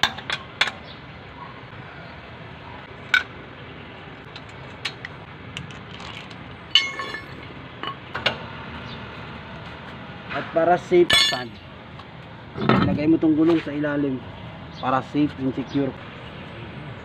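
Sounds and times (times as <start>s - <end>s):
wrench clinking on wheel nuts: 6.7s - 8.0s, 11.1s - 11.6s
ringing metal clank: 6.8s - 8.0s, 11.1s - 11.5s.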